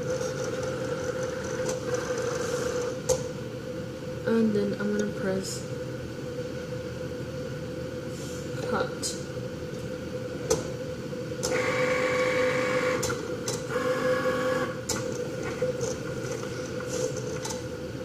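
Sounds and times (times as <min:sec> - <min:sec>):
steady hum: 0:00.0 - 0:18.0
cutting machine motors whirring: 0:11.4 - 0:16.5.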